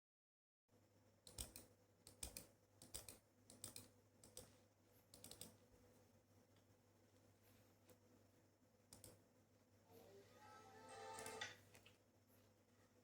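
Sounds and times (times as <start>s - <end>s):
computer keyboard typing: 1.3s - 4.5s, 5.1s - 5.6s, 8.9s - 9.2s.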